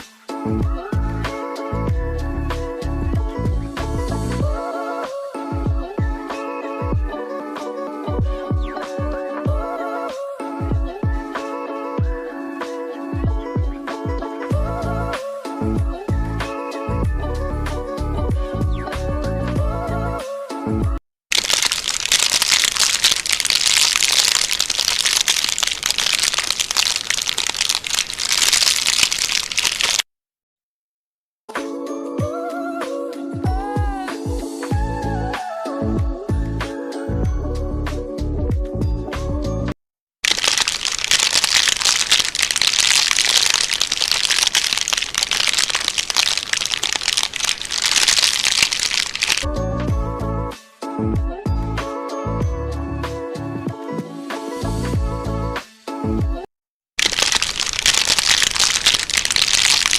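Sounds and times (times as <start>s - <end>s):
music: 0.0s - 21.0s, 31.5s - 39.7s, 49.5s - 56.5s
crinkly material being crumpled: 21.3s - 30.1s, 40.2s - 49.5s, 57.0s - 59.9s.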